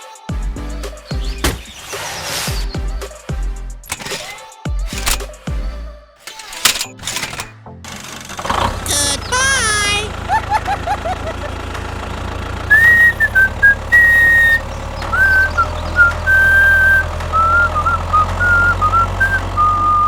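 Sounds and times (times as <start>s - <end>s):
sliding cartoon sound effect: 3.9s - 5.2s
person whistling a tune: 12.7s - 20.0s
short rising chirps: 12.7s - 20.0s.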